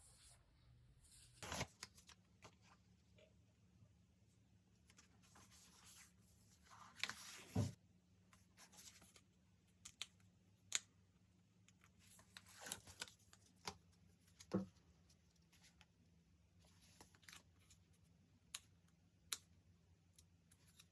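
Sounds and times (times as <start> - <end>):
paper rustling and crinkling: 4.9 - 7.8, 12.0 - 14.7.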